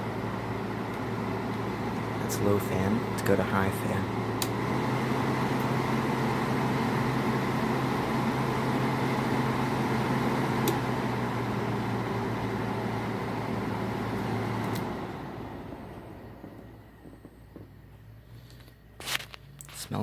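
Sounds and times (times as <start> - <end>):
air conditioner fan whirring: 0.0 - 20.0
air conditioner click: 4.3 - 4.6, 10.5 - 11.0, 14.1 - 15.0.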